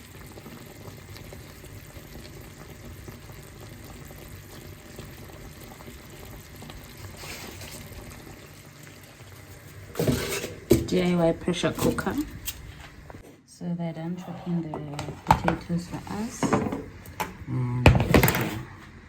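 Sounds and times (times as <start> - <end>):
stock bubbling in a pot: 0.0 - 13.2.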